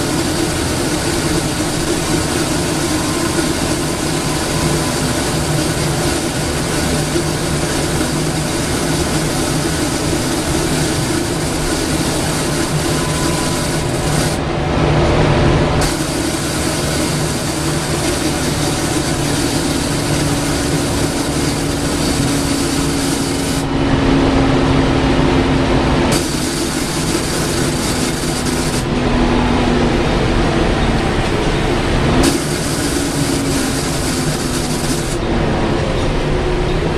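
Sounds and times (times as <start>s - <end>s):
held tone: 0.0s - 25.4s
bus diesel engine running: 0.0s - 36.9s.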